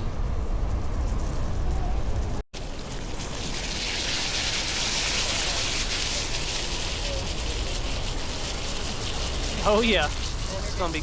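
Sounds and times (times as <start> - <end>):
fish sizzling in oil: 2.6 - 11.0.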